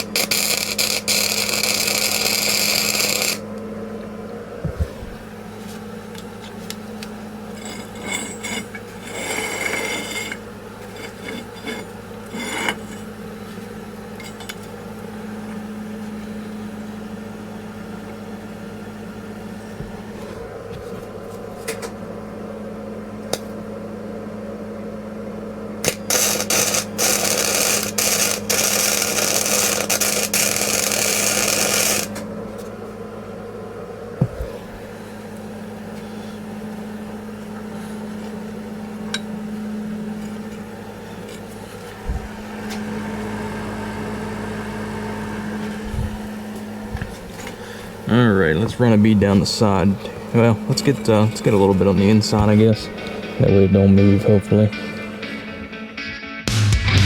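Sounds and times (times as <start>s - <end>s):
arc welding crackle: 0.0s - 3.4s, 25.8s - 32.2s
low welder hum: 0.0s - 57.0s.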